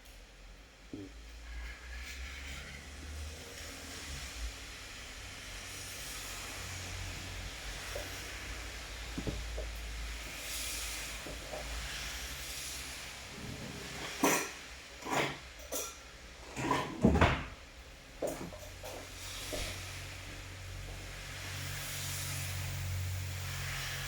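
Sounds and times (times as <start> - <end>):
rain hiss: 2.3 - 16.4, 18.0 - 24.0.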